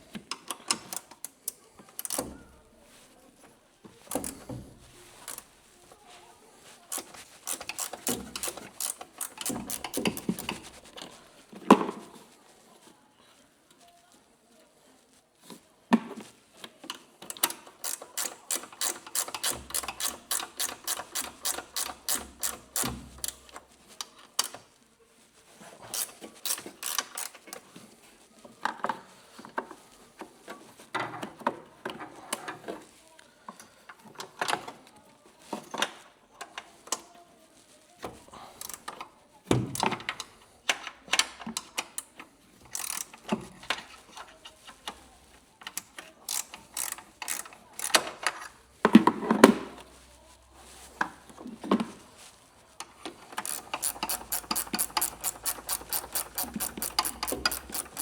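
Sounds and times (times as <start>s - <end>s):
ratchet wrench clicking: 5.2s - 5.4s, 6.9s - 10.4s, 17.8s - 23.4s, 25.9s - 27.4s, 42.7s - 43.1s, 46.3s - 48.0s, 53.4s - 58.0s.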